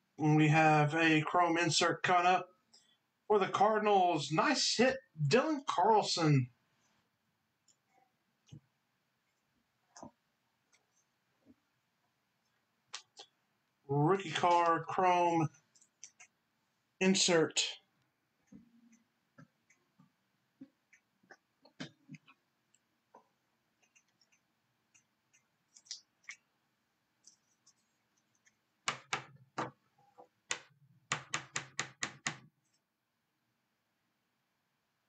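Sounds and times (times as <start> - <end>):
trading cards tapping and clicking: 28.4 - 29.8, 30.5 - 32.5.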